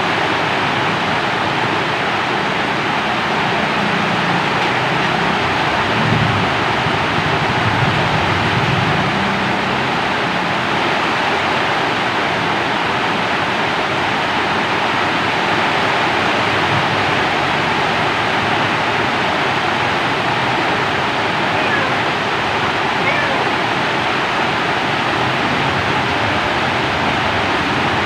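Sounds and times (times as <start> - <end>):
heavy rainfall: 0.0 - 28.0
thunder rumble: 4.9 - 10.3.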